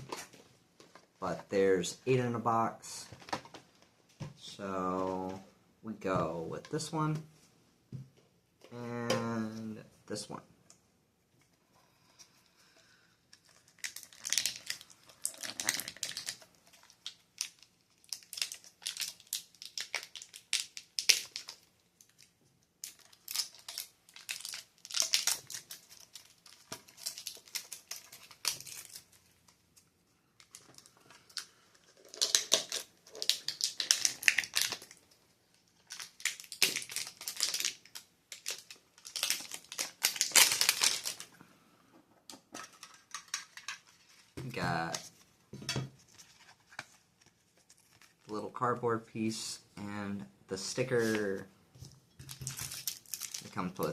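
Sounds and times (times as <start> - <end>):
plastic wrapping crinkling: 13.3 - 41.4, 42.6 - 45.3, 46.0 - 48.4, 50.6 - 53.9.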